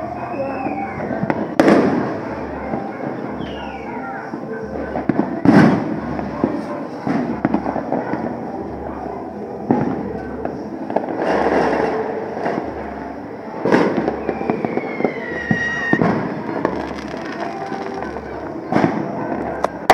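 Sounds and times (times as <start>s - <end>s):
fireworks bangs and crackling: 0.0s - 19.9s
falling firework whistle: 0.3s - 2.0s, 13.7s - 18.0s.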